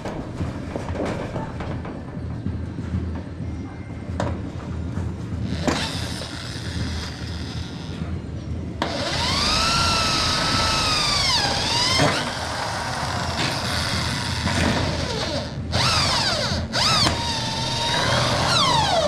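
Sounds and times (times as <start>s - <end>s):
small motor whining: 8.8s - 19.0s.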